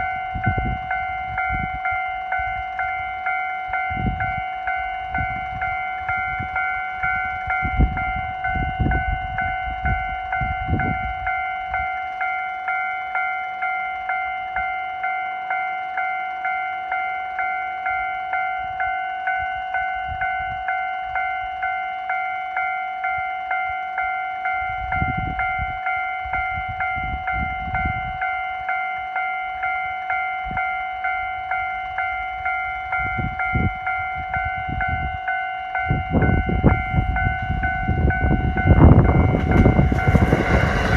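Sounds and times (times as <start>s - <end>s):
level crossing warning bell: 0.0s - 40.9s
low rumbles: 36.6s - 40.9s.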